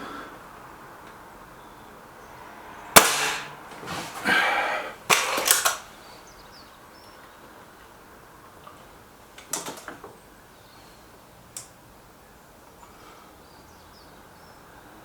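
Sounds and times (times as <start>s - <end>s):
air rifle shot: 3.0s - 3.7s, 5.1s - 5.9s
rifle rattling and clicking: 5.1s - 5.9s.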